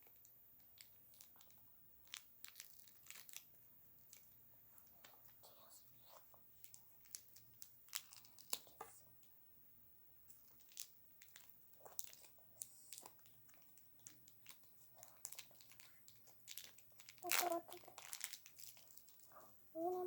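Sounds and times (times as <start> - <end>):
soft crinkles: 0.0 - 20.0.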